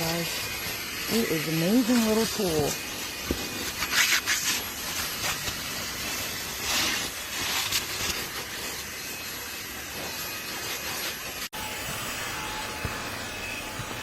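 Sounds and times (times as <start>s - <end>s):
handheld vacuum suction hiss: 0.0s - 14.0s.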